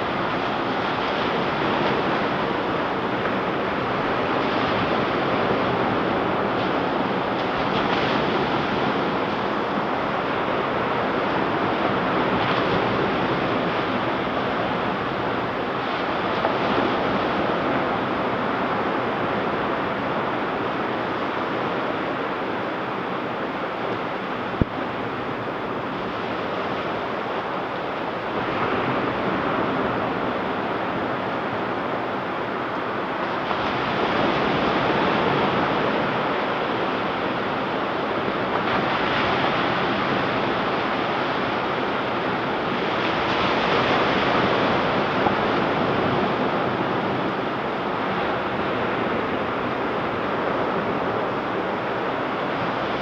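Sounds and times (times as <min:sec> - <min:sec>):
waves breaking on beach: 0:00.0 - 0:53.0.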